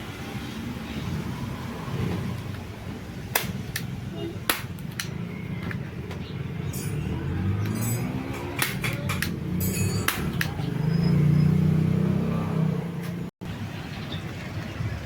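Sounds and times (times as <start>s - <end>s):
tools clinking on metal: 6.6s - 10.7s.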